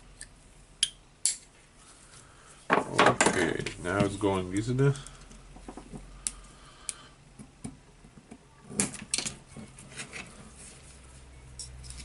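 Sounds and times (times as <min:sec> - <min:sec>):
metal parts clinking and tapping: 0:11.6 - 0:12.0.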